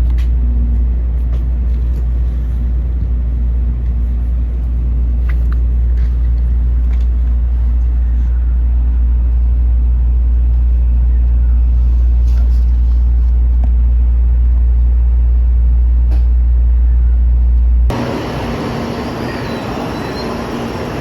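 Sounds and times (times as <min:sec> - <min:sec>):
train carriage rumble: 0:00.0 - 0:21.0.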